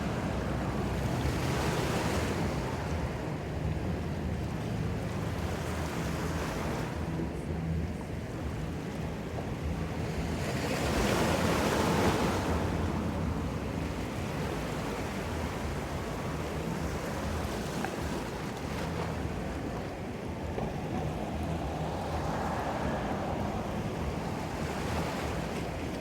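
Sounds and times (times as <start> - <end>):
ocean surf washing in: 19.3 - 26.0.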